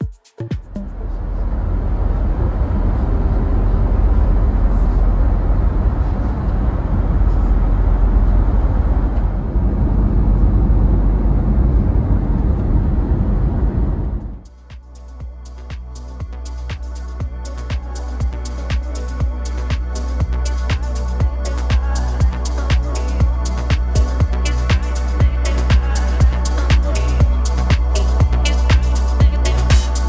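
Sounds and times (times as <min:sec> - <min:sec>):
jet engines rumbling in cabin: 0:00.8 - 0:14.4.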